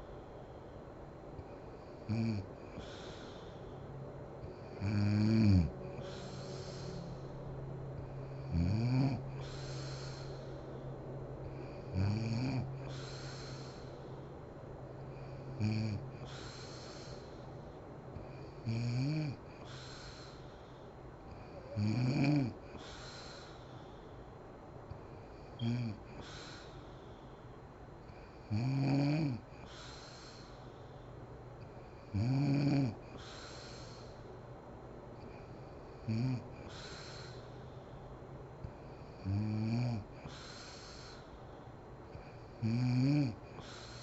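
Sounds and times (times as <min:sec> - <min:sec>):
steady low hum: 0:00.0 - 0:44.0
woman snoring: 0:01.4 - 0:03.4, 0:04.5 - 0:07.0, 0:08.0 - 0:10.4, 0:11.4 - 0:13.9, 0:15.1 - 0:17.3, 0:18.2 - 0:20.4, 0:21.3 - 0:23.6, 0:25.0 - 0:26.8, 0:28.1 - 0:30.5, 0:32.0 - 0:34.1, 0:35.2 - 0:37.4, 0:38.8 - 0:41.3, 0:42.1 - 0:44.0.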